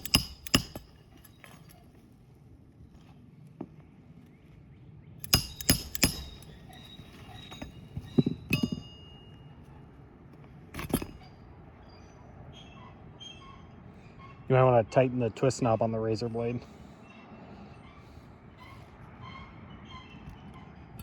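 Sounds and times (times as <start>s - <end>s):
metal tools clinking on roof: 0.0s - 2.0s, 5.2s - 9.8s, 10.8s - 11.4s.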